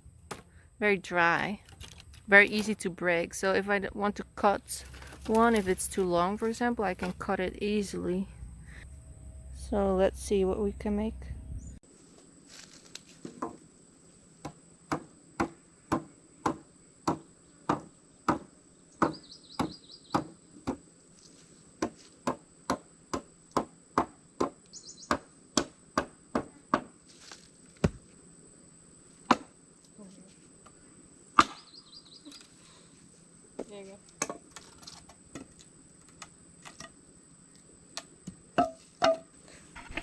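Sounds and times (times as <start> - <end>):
knife chopping into log: 0.3 - 0.5, 31.4 - 31.6.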